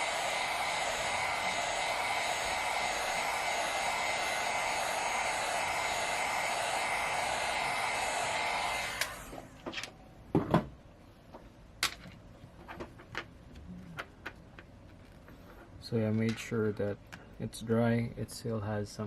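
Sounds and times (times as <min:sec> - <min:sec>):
heat gun blowing: 0:00.0 - 0:09.7.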